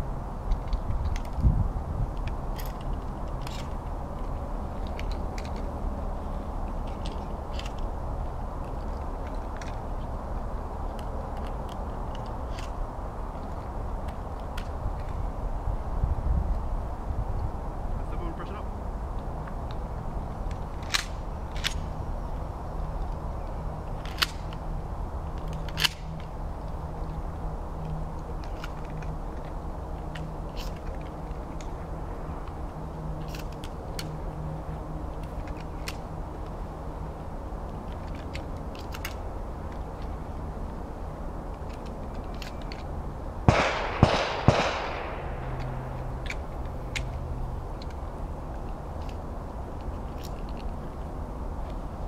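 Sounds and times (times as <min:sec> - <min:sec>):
low background noise: 0:00.0 - 0:52.0
shotgun shots: 0:43.5 - 0:45.6.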